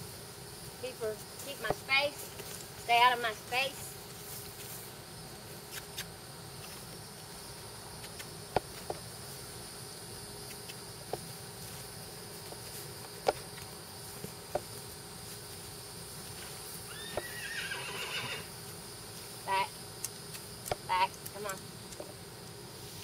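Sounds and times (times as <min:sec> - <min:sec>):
insects chirring: 0:00.0 - 0:23.0
horse whinnying: 0:16.9 - 0:18.5.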